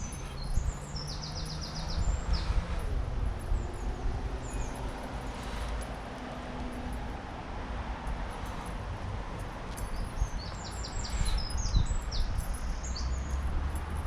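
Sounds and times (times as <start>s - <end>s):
songbird chirping: 0.0s - 2.6s
wind buffeting microphone: 0.0s - 14.0s.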